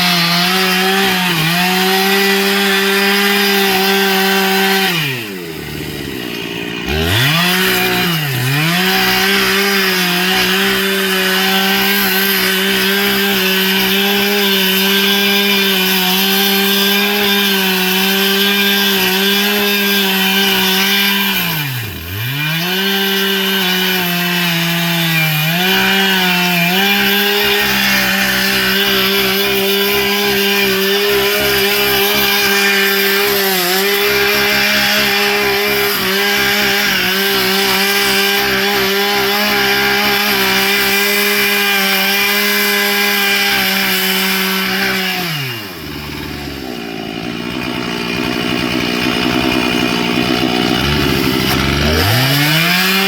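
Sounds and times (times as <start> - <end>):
chainsaw cutting wood: 0.0 - 53.0.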